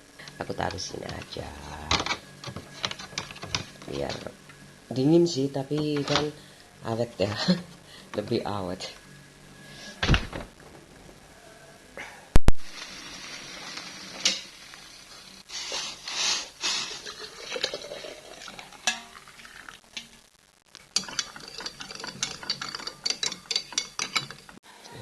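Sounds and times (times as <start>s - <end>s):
dishes and utensils clinking: 18.8s - 19.2s, 21.0s - 24.6s.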